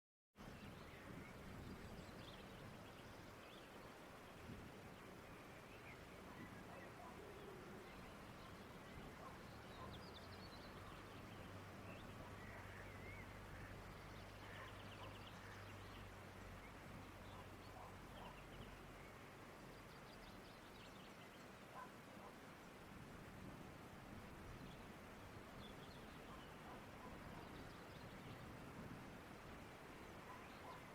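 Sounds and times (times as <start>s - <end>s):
distant bird chirps: 5.5s - 22.4s, 30.0s - 30.9s.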